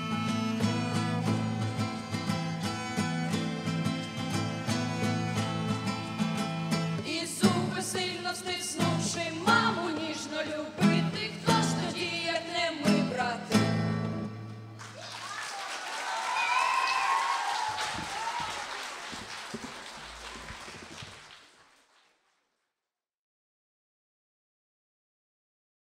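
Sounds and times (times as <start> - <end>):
acoustic guitar strumming: 0.0 - 14.8
person singing: 7.0 - 14.0
applause: 14.8 - 22.6.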